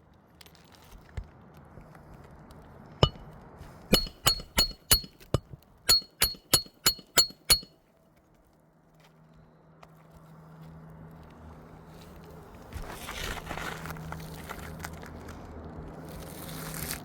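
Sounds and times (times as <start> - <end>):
hammer striking metal tool: 3.0 - 3.2, 3.9 - 7.7.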